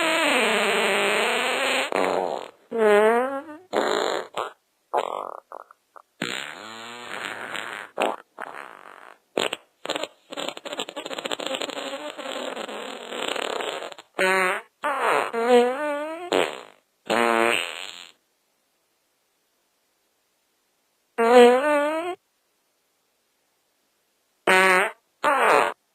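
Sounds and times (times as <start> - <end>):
fart sounds: 0.0 - 18.2, 21.2 - 22.2, 24.5 - 25.8.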